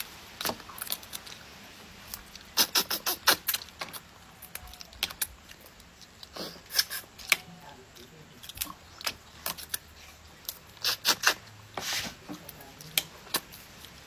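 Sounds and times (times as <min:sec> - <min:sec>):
crab shell cracking: 0:00.3 - 0:07.6.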